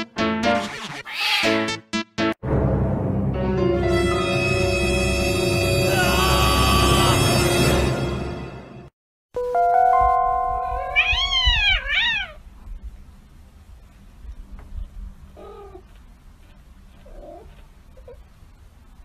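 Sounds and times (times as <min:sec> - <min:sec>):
cat yowling: 0:01.0 - 0:01.6, 0:10.8 - 0:12.4.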